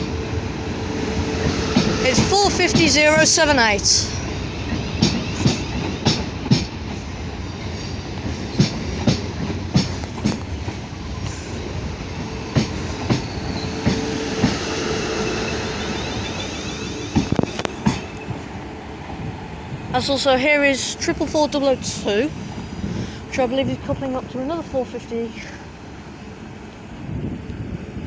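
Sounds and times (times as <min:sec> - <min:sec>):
train wheels clicking over rail joints: 0:00.0 - 0:19.2
train rumble: 0:00.0 - 0:28.0.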